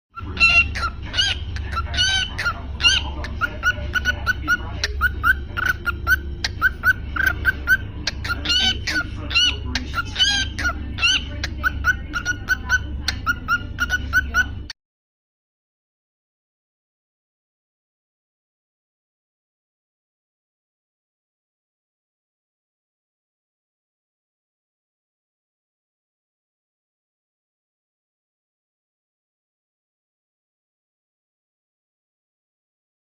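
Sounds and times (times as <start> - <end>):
cockatiel chirping and whistling: 0.2 - 14.5
steady low hum: 0.2 - 14.7.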